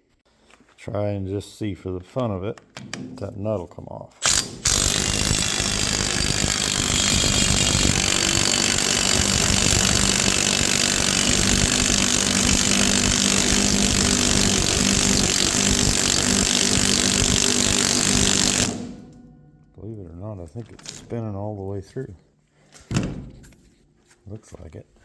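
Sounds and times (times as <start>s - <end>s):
power tool whirring: 4.2s - 19.2s.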